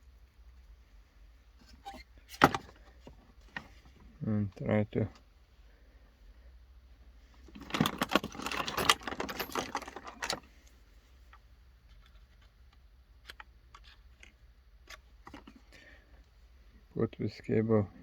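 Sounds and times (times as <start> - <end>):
small metal objects clicking and rattling: 7.6 - 10.4.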